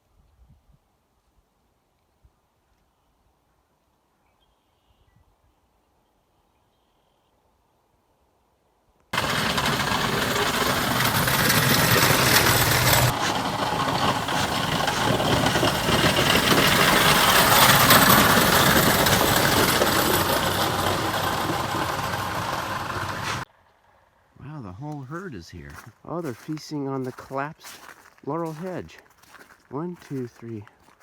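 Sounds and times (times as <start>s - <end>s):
engine running with rough rattle: 9.2s - 23.4s.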